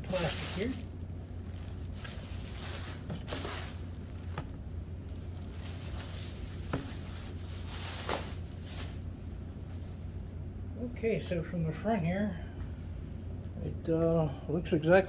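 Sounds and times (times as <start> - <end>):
plastic film rustling and crackling: 0.0 - 9.1
steady low hum: 0.0 - 15.0.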